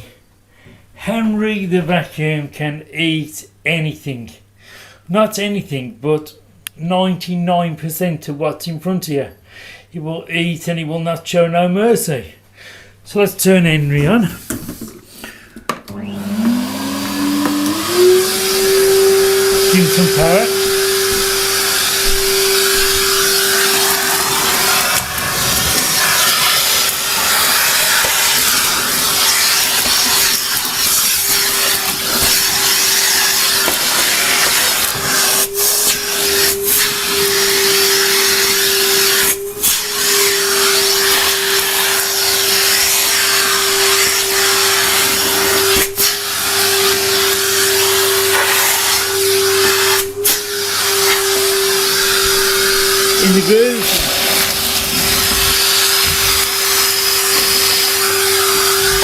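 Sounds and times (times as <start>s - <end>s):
vacuum cleaner running: 15.8s - 59.0s.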